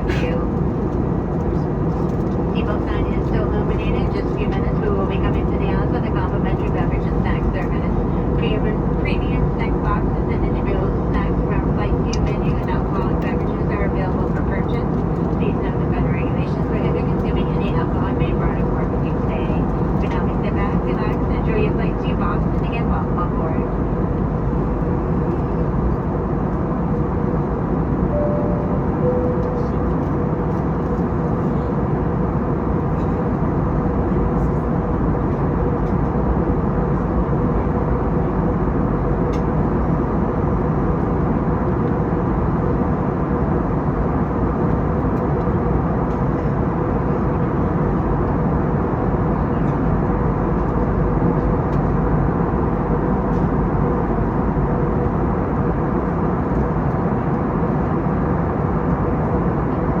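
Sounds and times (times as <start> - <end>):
jet engines droning: 0.0 - 60.0
steady hum: 28.0 - 31.7.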